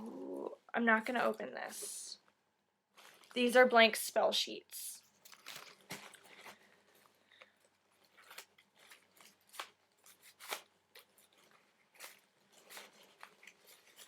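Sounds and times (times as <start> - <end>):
paper and wrapping rustling: 2.9 - 4.2, 4.9 - 14.0.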